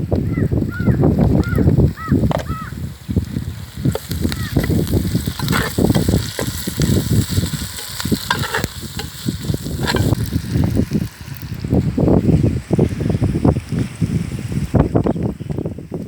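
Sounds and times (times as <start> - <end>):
chicken sizzling in a pot: 2.6 - 12.4
scraping in a pot: 3.8 - 11.0.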